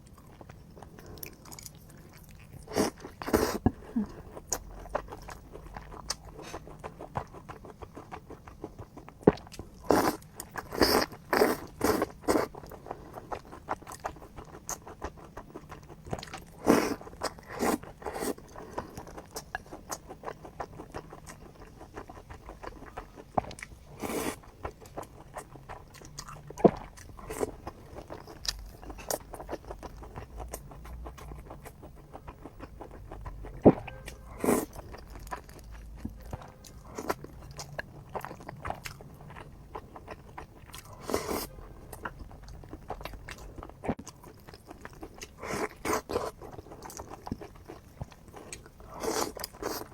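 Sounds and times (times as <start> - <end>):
close-miked chewing: 0.0 - 49.9.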